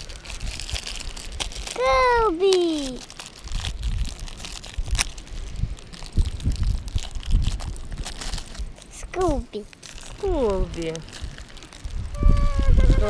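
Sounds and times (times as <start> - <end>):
packaging crinkling and rustling: 0.0 - 13.0.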